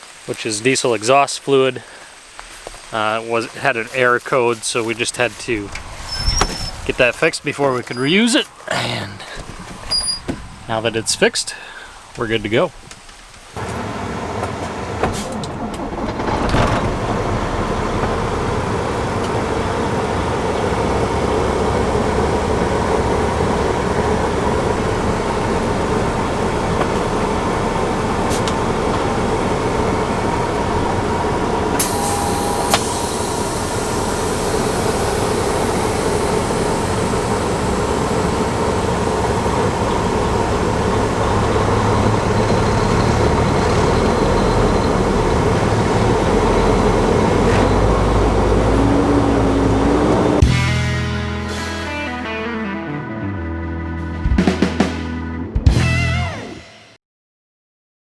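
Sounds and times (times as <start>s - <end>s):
diesel truck engine running: 0.0s - 56.2s.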